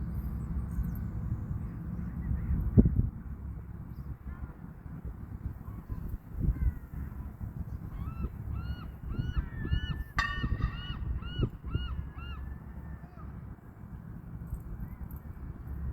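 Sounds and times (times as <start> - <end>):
bird calling repeated notes: 8.0 - 12.5.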